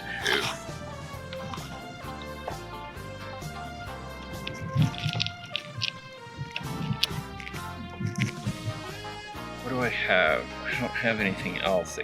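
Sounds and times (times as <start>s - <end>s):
background music with held notes: 0.0s - 12.0s.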